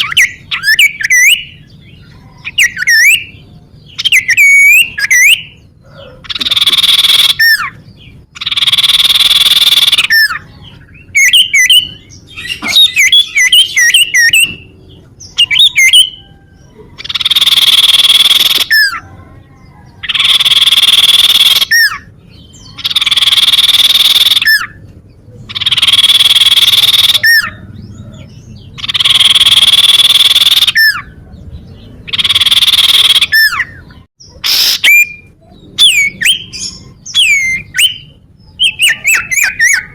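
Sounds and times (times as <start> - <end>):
whistled bird chirps: 0.0 - 1.6, 2.3 - 3.4, 4.0 - 5.6, 6.3 - 7.8, 11.1 - 14.6, 15.4 - 19.0, 25.5 - 27.6, 28.8 - 31.1, 32.1 - 39.9
bird calling buzzy trills: 0.0 - 19.0, 20.0 - 31.2, 32.0 - 39.9.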